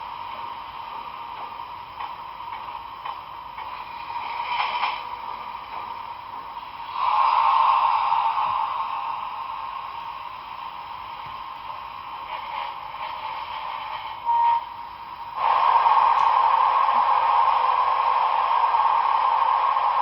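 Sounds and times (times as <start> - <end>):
hiss through small speaker: 0.0 - 20.0
short beep: 14.3 - 14.7.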